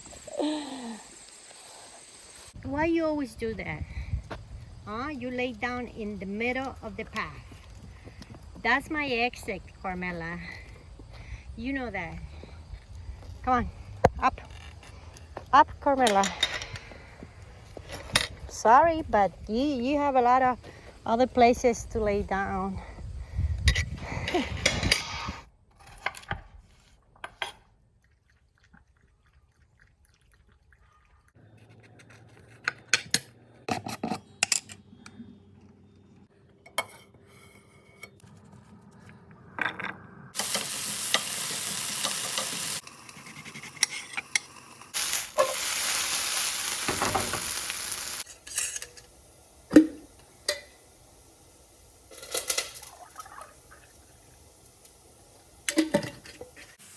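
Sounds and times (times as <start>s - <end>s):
food sizzling in hot pan: 40.4s - 43.3s, 44.3s - 56.9s.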